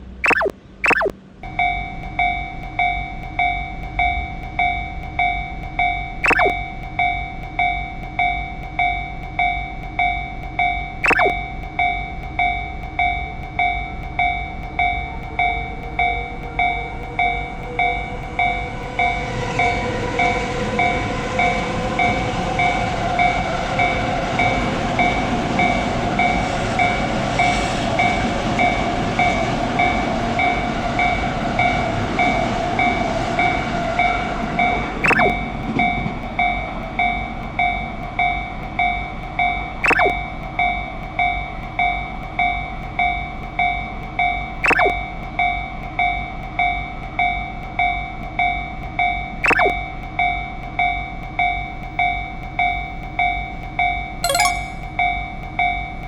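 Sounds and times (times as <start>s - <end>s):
level crossing bell ringing: 54.3s - 54.9s.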